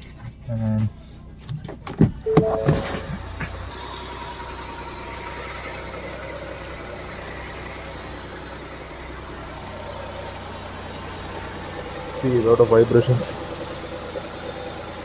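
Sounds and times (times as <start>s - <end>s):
car engine idling: 0.0s - 15.0s
rising high chirps: 2.3s - 3.3s.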